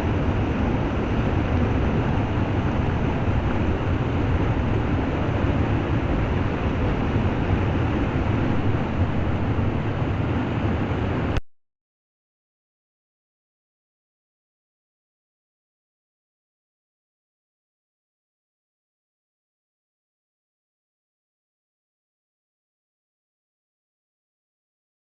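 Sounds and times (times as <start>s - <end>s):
heavy rain: 0.0s - 11.4s.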